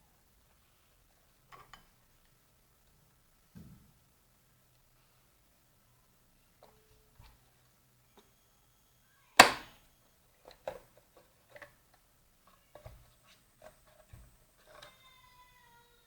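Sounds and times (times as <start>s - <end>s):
plastic housing clicks and knocks: 9.4s - 9.7s.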